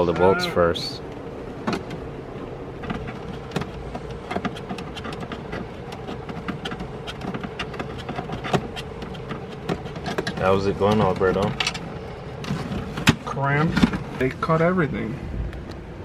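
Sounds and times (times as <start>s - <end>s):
steady low hum: 0.0s - 16.0s
hand tools clicking and knocking: 2.8s - 14.2s.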